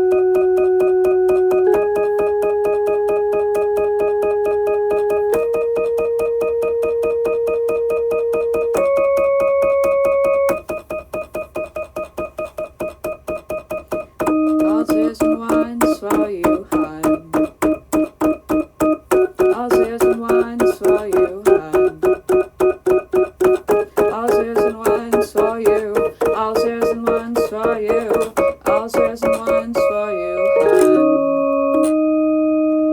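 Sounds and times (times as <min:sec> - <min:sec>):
electric piano chord: 0:00.0 - 0:10.6, 0:29.3 - 0:32.9
electronic keyboard music: 0:00.0 - 0:12.4, 0:13.1 - 0:32.9
fast ticking beat: 0:00.0 - 0:31.0.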